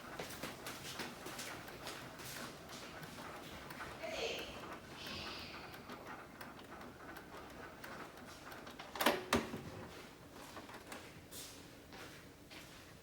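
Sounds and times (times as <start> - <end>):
printer mechanical ticking: 0.0 - 9.6
printer sharp clacks: 0.0 - 9.6.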